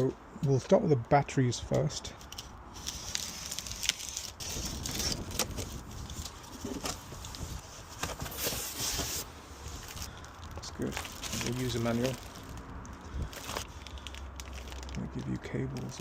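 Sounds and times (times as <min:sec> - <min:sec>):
packaging knocks and scrapes: 0:02.8 - 0:10.1.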